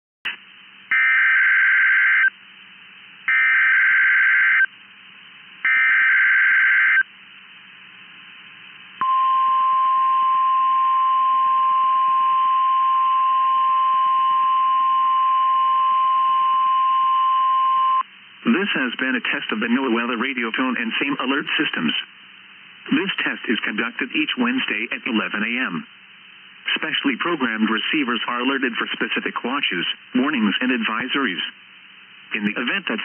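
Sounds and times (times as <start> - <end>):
steady warning alarm tone: 3.3 - 4.7.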